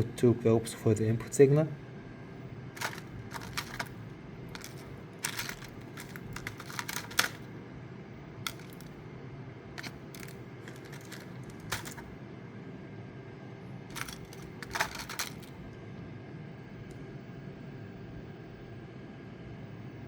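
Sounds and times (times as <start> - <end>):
steady low hum: 0.0 - 20.0
wires clicking into breadboard: 2.8 - 4.0, 4.6 - 7.5, 8.5 - 8.9, 9.8 - 12.1, 13.9 - 15.5.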